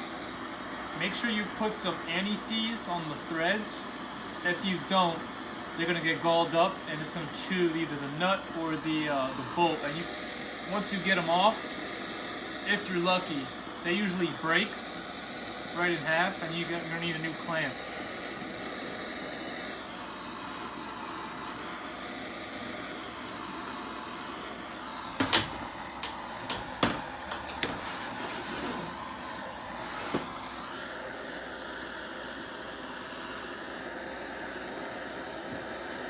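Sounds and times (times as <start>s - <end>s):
torch flame roaring: 0.0s - 36.0s
sharp metallic clicks and knocks: 25.2s - 27.9s.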